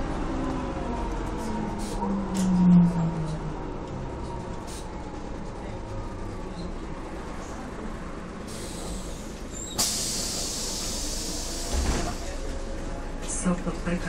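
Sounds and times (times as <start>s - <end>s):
diesel bus engine rumbling: 0.0s - 14.0s
compressed air hiss: 8.5s - 11.9s.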